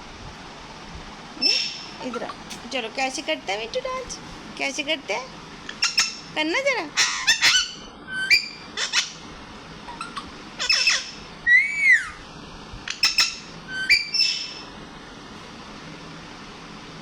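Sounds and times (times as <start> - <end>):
parrot whistle: 1.4 - 2.0, 5.7 - 6.3, 7.0 - 9.2, 9.9 - 12.2, 12.9 - 14.7
parrot squawking: 1.4 - 2.5, 5.6 - 9.2, 9.8 - 12.2, 12.9 - 14.7.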